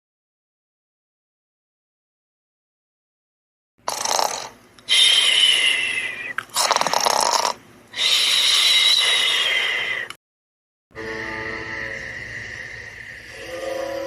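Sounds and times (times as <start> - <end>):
cartoon snoring with whistling exhales: 3.8 - 10.1.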